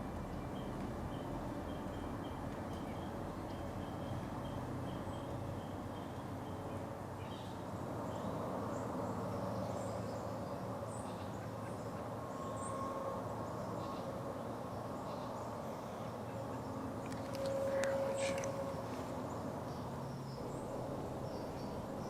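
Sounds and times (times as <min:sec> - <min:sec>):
low rushing ambient noise: 0:00.0 - 0:22.0.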